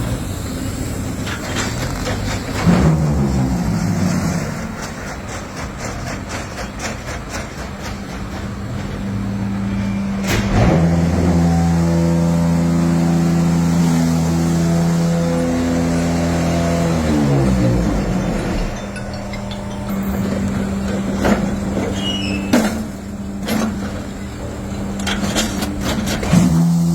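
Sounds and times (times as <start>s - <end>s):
machine clatter: 0.8s - 11.0s, 17.6s - 26.6s
machine hum winding down: 8.8s - 22.2s
sharp bang: 9.7s - 11.7s.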